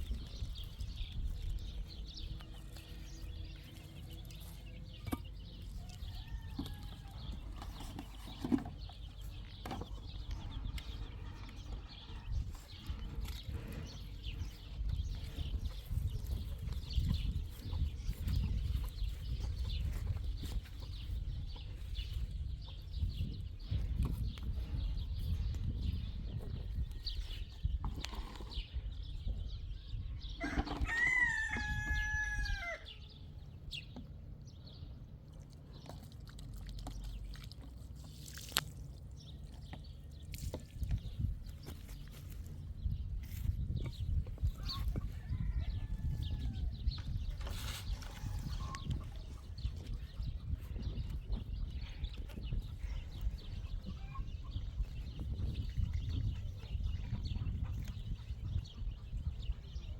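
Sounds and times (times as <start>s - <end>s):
rooster crowing: 30.4s - 32.9s.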